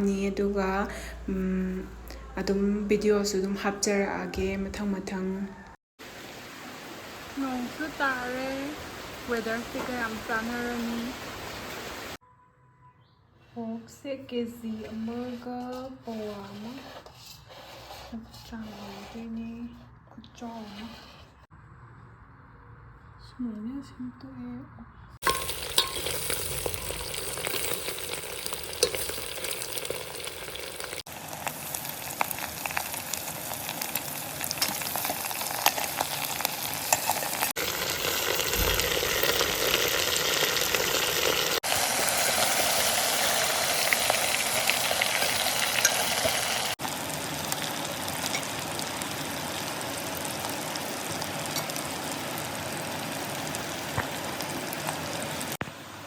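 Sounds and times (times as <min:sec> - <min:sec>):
food sizzling in a pan: 0:06.0 - 0:12.2, 0:25.2 - 0:55.6
utensil clicking on pan: 0:25.2 - 0:27.8, 0:28.5 - 0:29.7.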